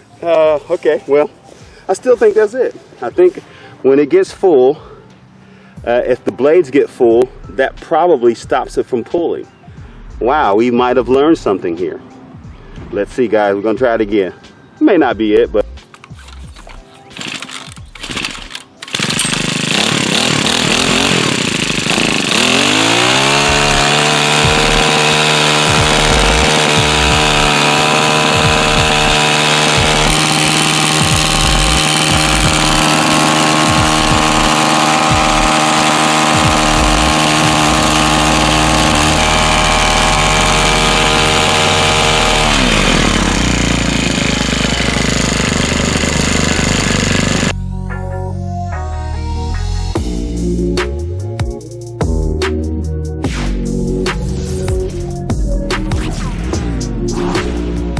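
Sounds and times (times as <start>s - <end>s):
small gasoline engine running: 17.1s - 47.6s.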